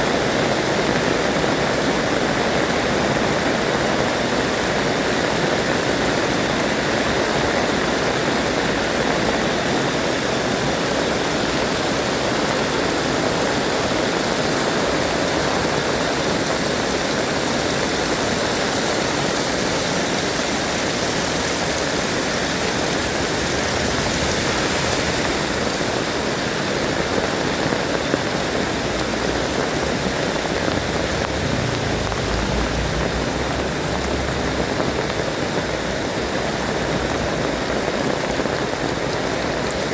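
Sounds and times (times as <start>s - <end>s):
heavy rain pouring: 0.0s - 39.9s
low rumble: 22.5s - 26.3s, 29.4s - 35.8s.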